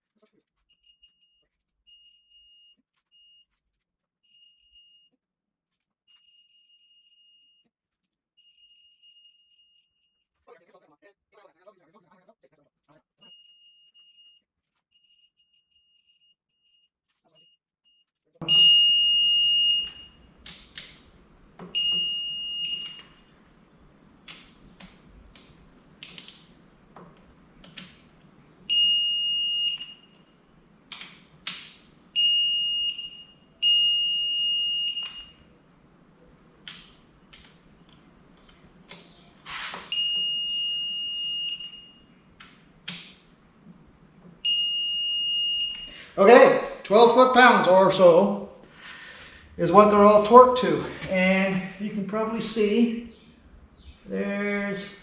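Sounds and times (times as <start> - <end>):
torque wrench beeping: 18.4 - 48.0.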